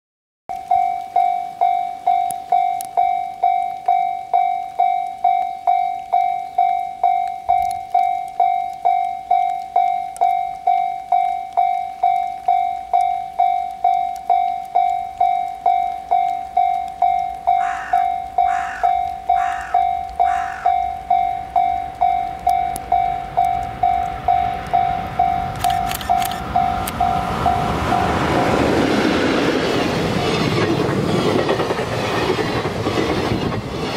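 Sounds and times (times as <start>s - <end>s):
level-crossing warning bell: 0.5s - 30.6s
freight train rumbling: 23.7s - 33.9s.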